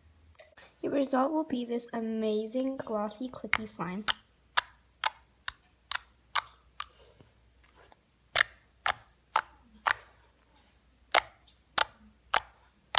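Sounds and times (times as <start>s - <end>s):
slime worked by hand: 3.4s - 12.9s.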